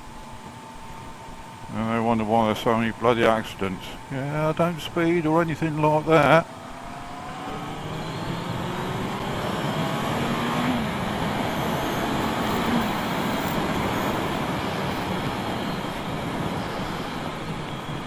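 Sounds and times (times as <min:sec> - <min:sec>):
motorcycle engine accelerating: 0:06.4 - 0:18.0.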